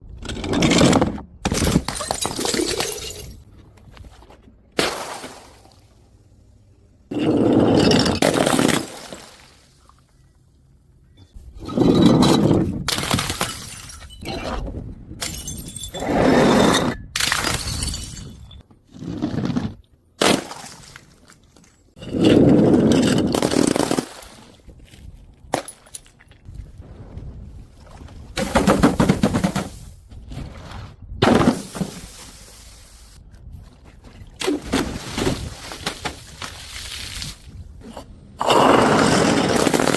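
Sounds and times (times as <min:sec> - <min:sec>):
glass bottles smashing: 0:01.5 - 0:03.4, 0:12.9 - 0:14.3, 0:15.2 - 0:16.0, 0:17.2 - 0:18.6.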